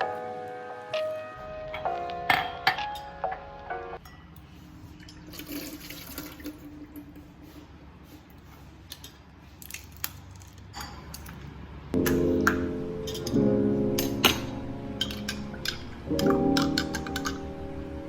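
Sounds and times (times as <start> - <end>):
background music: 0.0 - 4.0, 12.0 - 18.0.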